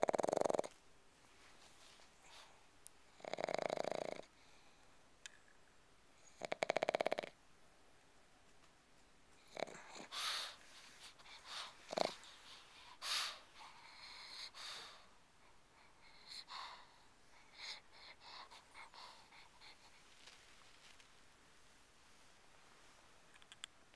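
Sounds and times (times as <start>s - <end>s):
wheezy dog snorts: 0.0s - 0.7s, 3.2s - 4.3s, 6.3s - 7.4s, 9.4s - 15.0s
dog breathing noisily: 9.5s - 20.4s.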